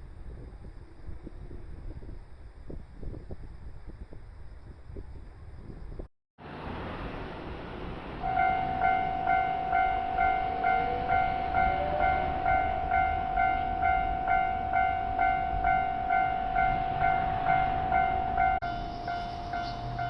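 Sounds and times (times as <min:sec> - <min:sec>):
level crossing warning bell: 0:08.2 - 0:20.0.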